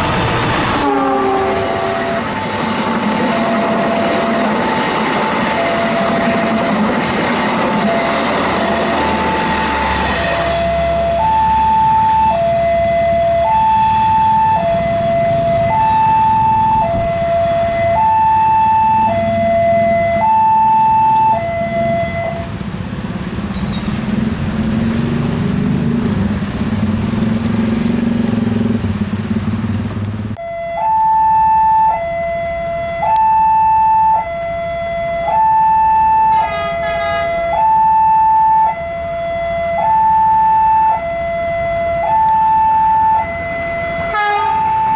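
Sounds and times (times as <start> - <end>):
two-tone crossing alarm: 0.8 - 22.6, 30.4 - 44.9.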